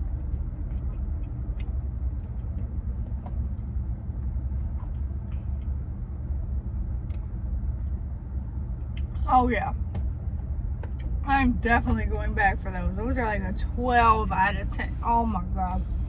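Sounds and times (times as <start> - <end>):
chewing and mouth clicks: 0.0 - 5.8
steady low rumble: 0.0 - 16.0.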